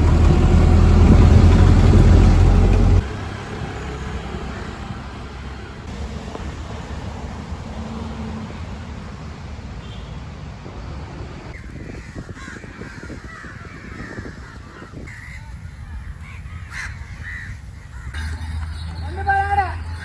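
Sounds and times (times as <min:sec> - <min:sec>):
low steady rumble: 0:00.0 - 0:03.0
crows cawing: 0:11.9 - 0:18.5.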